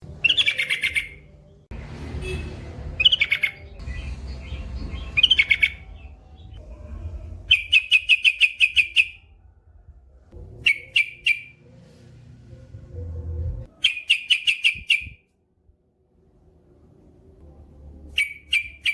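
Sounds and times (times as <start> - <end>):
low rumbling noise: 1.3 - 7.8, 9.2 - 13.7.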